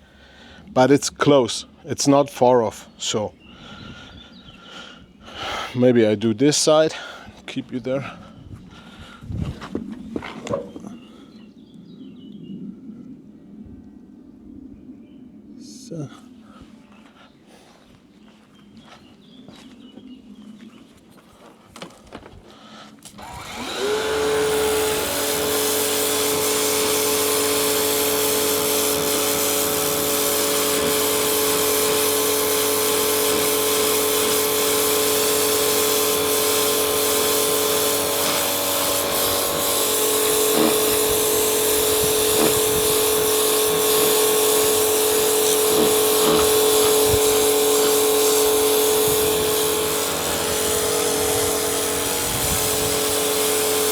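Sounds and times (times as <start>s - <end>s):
pressure washer motor whine: 23.2s - 53.9s.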